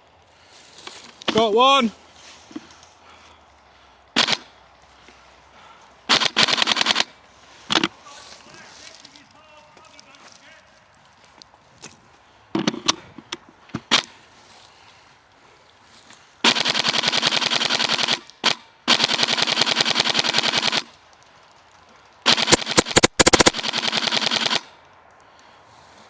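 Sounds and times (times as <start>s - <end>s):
airsoft rifle firing bursts: 4.1s - 4.6s, 6.1s - 7.9s, 13.8s - 14.2s, 16.4s - 21.0s, 22.2s - 24.8s.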